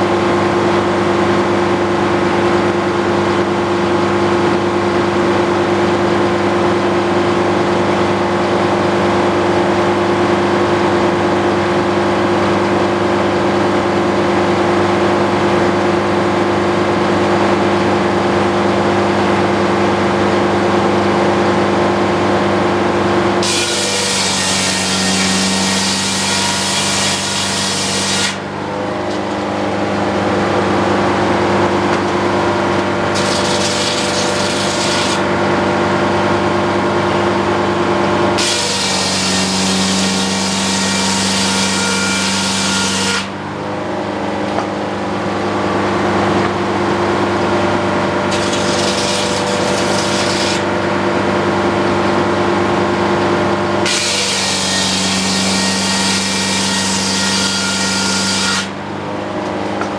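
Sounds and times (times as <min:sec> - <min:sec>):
sawmill engine running: 0:00.0 - 0:59.9
saw blade cutting wood: 0:23.4 - 0:28.5, 0:32.7 - 0:35.4, 0:38.4 - 0:43.4, 0:48.0 - 0:50.9, 0:53.8 - 0:58.8.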